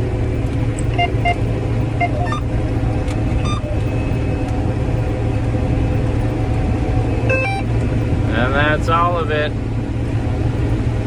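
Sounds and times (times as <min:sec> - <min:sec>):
combine harvester drone: 0:00.0 - 0:11.0
short high beeps: 0:01.0 - 0:02.5, 0:03.4 - 0:03.8, 0:07.3 - 0:07.7.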